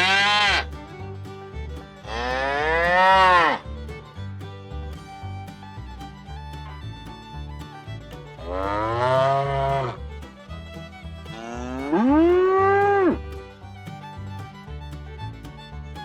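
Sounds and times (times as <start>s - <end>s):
cow mooing: 0.0s - 0.6s, 8.5s - 9.9s, 11.4s - 13.2s.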